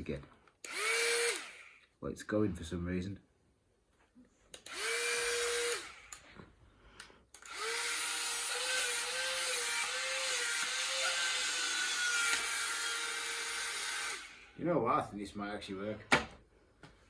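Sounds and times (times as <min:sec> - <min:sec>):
toy car fan motor whirring: 0:00.6 - 0:01.8, 0:04.6 - 0:06.3, 0:07.4 - 0:14.5.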